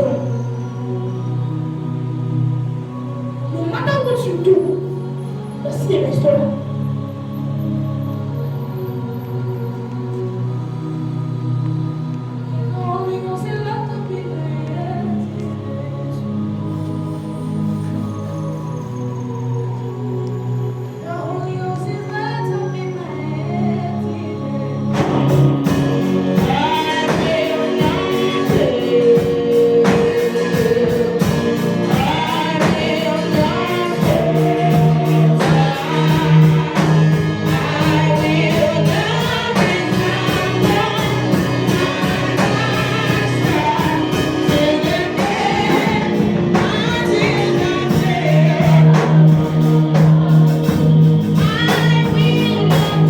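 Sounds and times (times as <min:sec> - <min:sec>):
gospel music with singing: 0:00.0 - 0:53.0.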